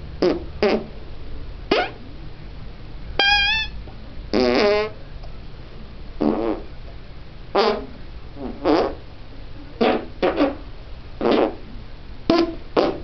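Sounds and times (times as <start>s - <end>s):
fake fart noises with hands: 0.2s - 0.9s, 1.7s - 2.0s, 3.2s - 5.0s, 6.2s - 6.7s, 7.6s - 9.0s, 9.8s - 10.6s, 11.2s - 11.6s, 12.3s - 13.0s.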